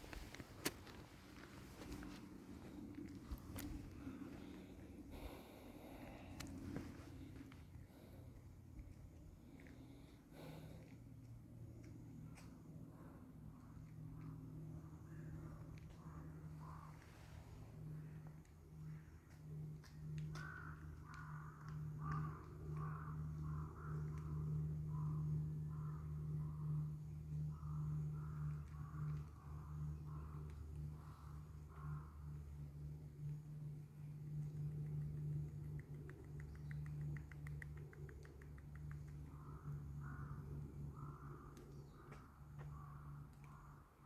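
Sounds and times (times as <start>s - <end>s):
steady low hum: 0.0s - 44.0s
crow cawing: 20.3s - 26.0s, 31.2s - 32.4s, 39.4s - 43.8s.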